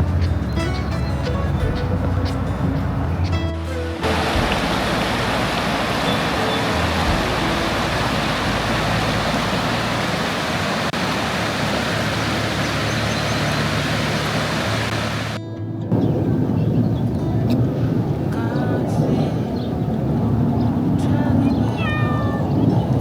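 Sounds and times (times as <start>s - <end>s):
car road noise: 0.0s - 23.0s
low engine hum: 0.0s - 23.0s.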